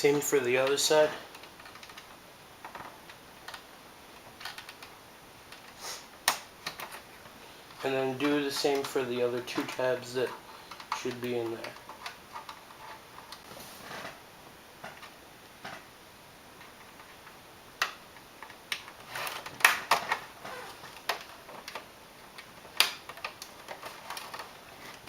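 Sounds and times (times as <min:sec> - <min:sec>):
plastic clicks and snaps: 0:05.5 - 0:07.0, 0:16.6 - 0:20.2, 0:20.9 - 0:25.0.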